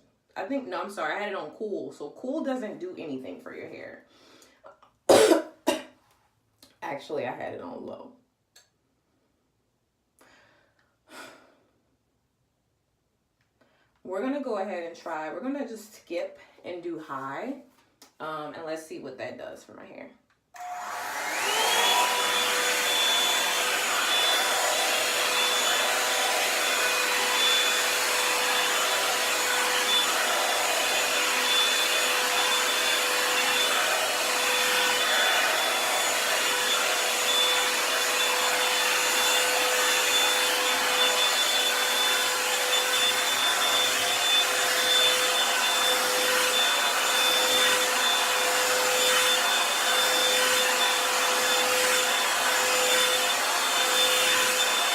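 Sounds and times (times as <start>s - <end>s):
hair dryer running: 20.6s - 54.9s.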